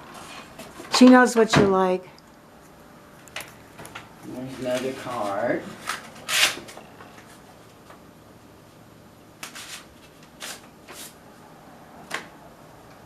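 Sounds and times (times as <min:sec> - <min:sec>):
paper rustling: 0:09.4 - 0:11.2.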